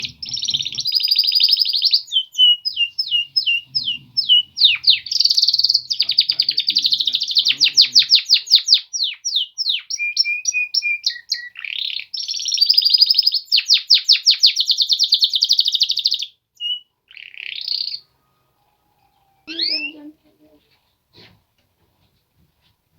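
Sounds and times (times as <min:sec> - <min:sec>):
short bird calls: 0:00.0 - 0:18.1
canary singing trills: 0:00.0 - 0:20.2.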